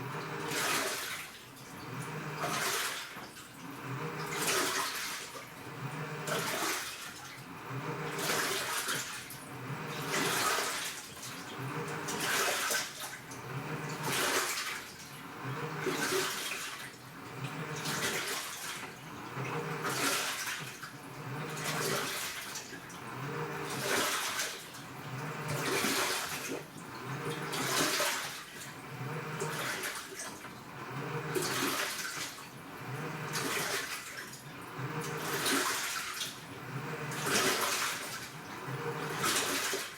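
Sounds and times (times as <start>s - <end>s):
low motor hum: 0.0s - 0.7s, 1.8s - 2.5s, 3.7s - 4.5s, 5.6s - 6.6s, 7.6s - 8.5s, 9.5s - 10.4s, 11.4s - 12.3s, 13.3s - 14.2s, 15.2s - 16.0s, 17.2s - 18.1s, 19.0s - 20.0s, 21.0s - 21.9s, 22.9s - 23.8s, 24.9s - 25.9s, 26.8s - 27.7s, 28.8s - 29.6s, 30.7s - 31.5s, 32.6s - 33.5s, 34.6s - 35.5s, 36.4s - 37.6s, 38.2s - 39.5s
washing machine water sloshing: 0.0s - 39.9s.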